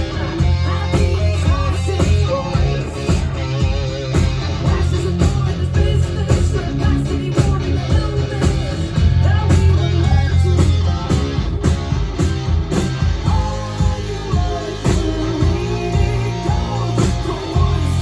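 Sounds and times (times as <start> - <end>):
bass guitar: 0.0 - 18.0
drums playing: 0.0 - 18.0
electric guitar: 0.0 - 18.0.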